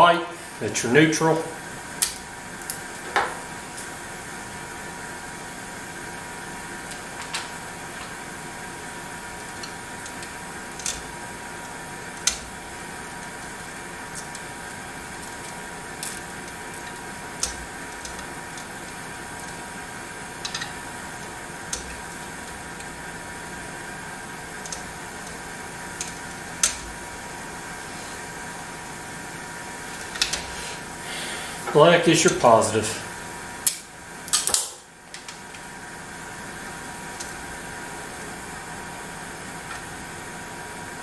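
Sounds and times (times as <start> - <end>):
steady background hum: 0.0 - 41.0
clicks handling wire connectors: 9.4 - 23.0, 24.5 - 27.0, 30.0 - 30.6, 33.7 - 35.6.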